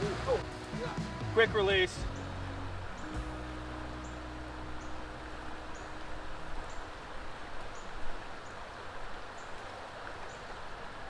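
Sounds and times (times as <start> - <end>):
water pouring over spillway: 0.0 - 3.0.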